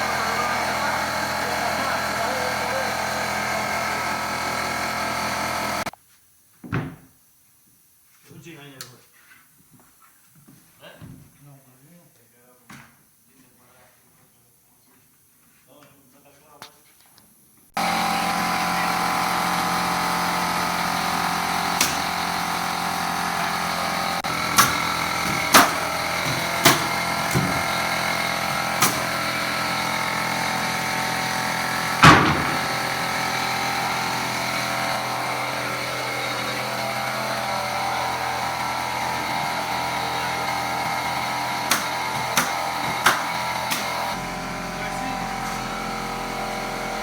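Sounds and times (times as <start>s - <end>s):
machine motor running: 0.0s - 5.9s, 17.8s - 47.0s
sharp knocks or shots: 32.0s - 32.9s.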